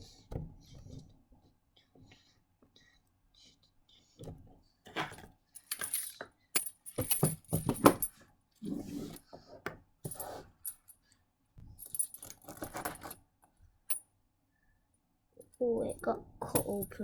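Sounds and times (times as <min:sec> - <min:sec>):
chain links clinking: 0:05.6 - 0:08.2, 0:11.8 - 0:13.2.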